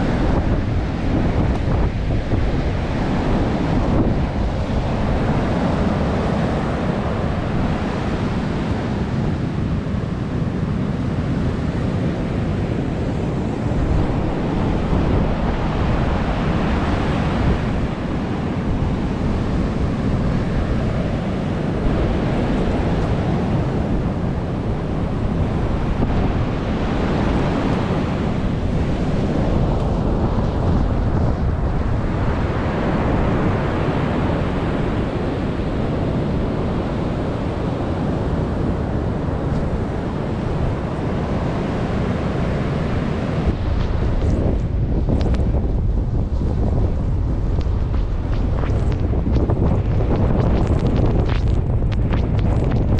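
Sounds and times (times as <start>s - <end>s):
ocean surf breaking: 0.0s - 52.9s
wind buffeting microphone: 0.0s - 52.9s.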